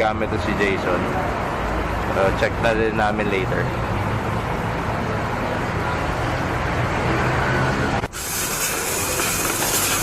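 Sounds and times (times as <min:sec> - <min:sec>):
traffic noise: 0:00.0 - 0:10.0
hiss: 0:08.1 - 0:10.0.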